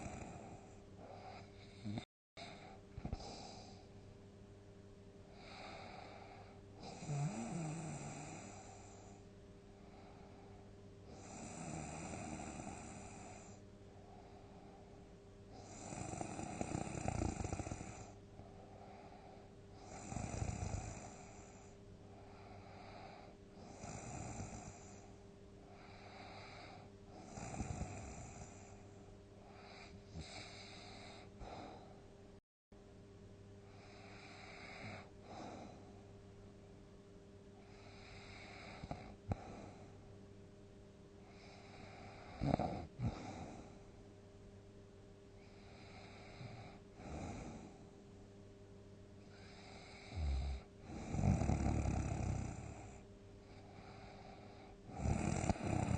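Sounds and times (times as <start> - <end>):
person snoring: 0.0 - 3.8, 5.4 - 9.1, 11.1 - 13.6, 15.6 - 18.2, 19.8 - 21.6, 22.3 - 25.0, 25.8 - 28.7, 29.5 - 32.0, 41.3 - 43.8, 49.3 - 53.0, 53.7 - 55.9
steady low hum: 0.0 - 55.9.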